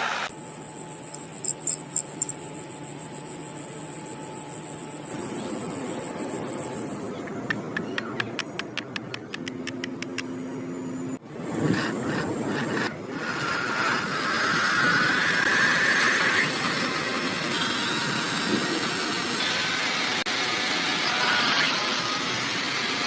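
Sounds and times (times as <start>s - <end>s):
motor whine: 9.9s - 23.0s.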